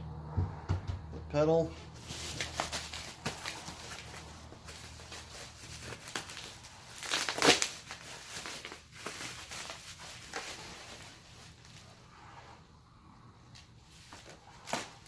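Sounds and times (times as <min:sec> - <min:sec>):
cardboard and packing rustling: 0:01.8 - 0:12.1, 0:13.5 - 0:15.0.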